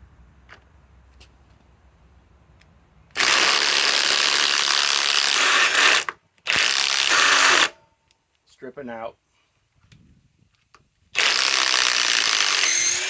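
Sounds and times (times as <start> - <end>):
impact wrench hammering: 12.1 - 13.0.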